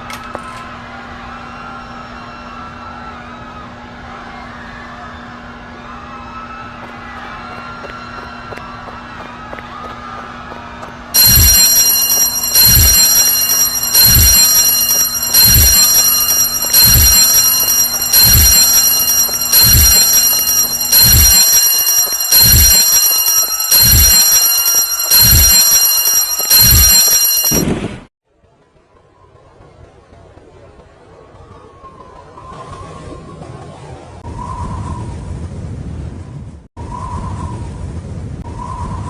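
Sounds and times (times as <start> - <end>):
electric alarm bell ringing: 11.2 - 27.7.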